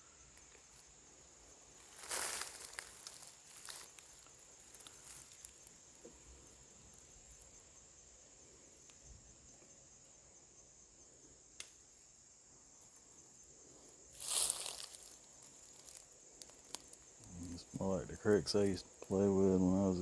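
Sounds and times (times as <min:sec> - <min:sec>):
insect chorus: 0:00.0 - 0:20.0
rustling and crackling: 0:01.6 - 0:07.5, 0:14.1 - 0:19.4.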